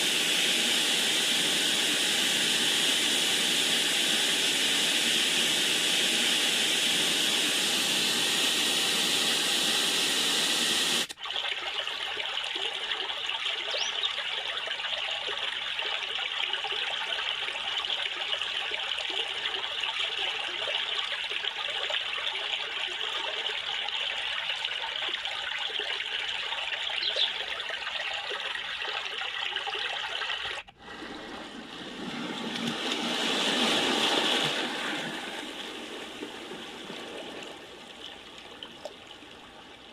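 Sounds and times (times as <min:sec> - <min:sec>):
steady white noise hiss: 0:00.0 - 0:11.1
water sound: 0:00.0 - 0:14.1, 0:26.2 - 0:39.9
running water trickling: 0:11.0 - 0:31.8, 0:34.7 - 0:39.9.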